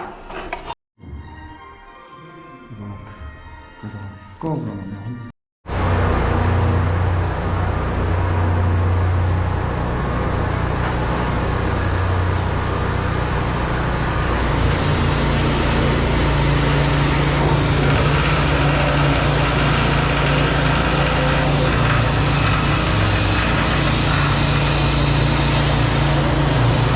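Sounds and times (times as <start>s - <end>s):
drain-jetting machine engine humming: 14.3s - 26.9s.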